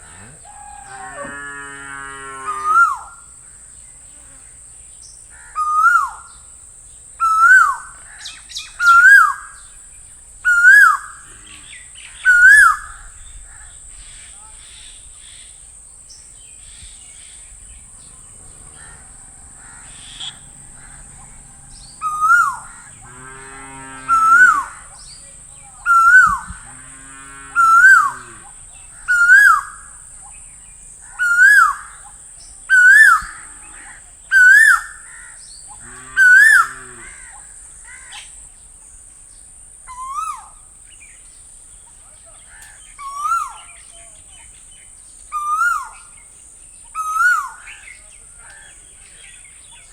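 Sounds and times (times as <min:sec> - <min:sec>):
bird calling rising notes: 0:17.4 - 0:30.0.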